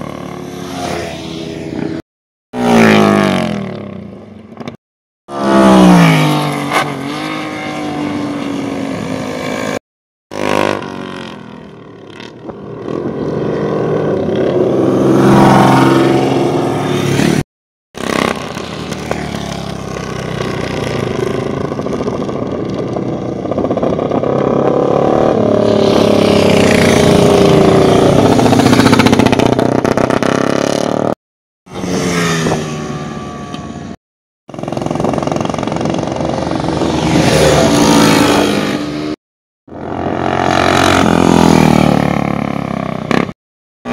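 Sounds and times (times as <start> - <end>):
motorcycle engines revving past: 0.0 - 2.0, 2.6 - 17.4, 18.0 - 43.9.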